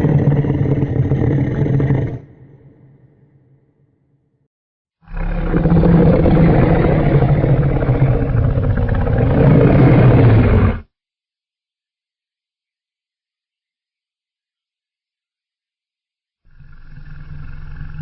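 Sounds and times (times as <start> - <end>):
low rumbling monster roar: 0.0 - 3.6, 5.0 - 10.9.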